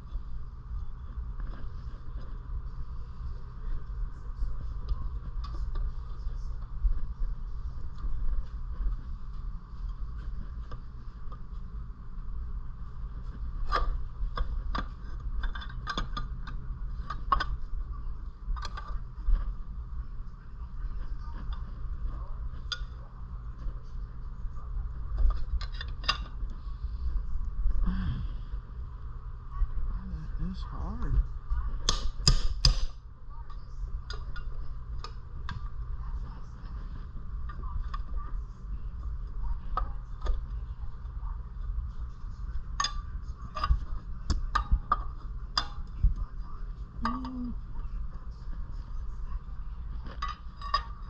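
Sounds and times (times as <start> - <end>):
steady low hum: 0.0 - 51.0.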